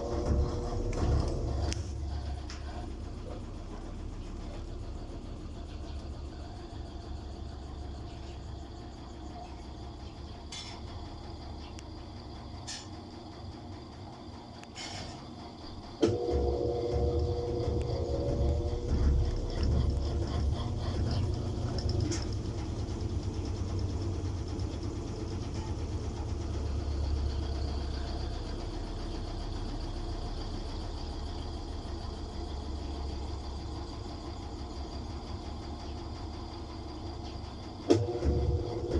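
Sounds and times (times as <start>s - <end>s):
washing machine spinning: 0.0s - 38.9s.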